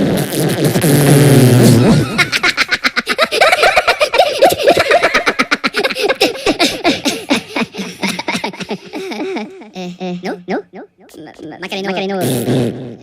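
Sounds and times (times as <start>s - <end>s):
high-pitched cartoon giggling: 1.8s - 11.1s.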